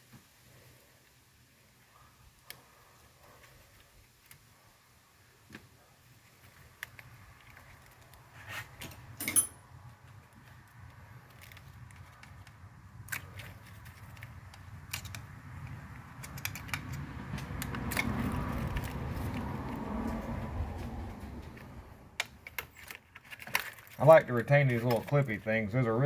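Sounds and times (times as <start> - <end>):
handling and rustling noise: 5.3 - 26.0.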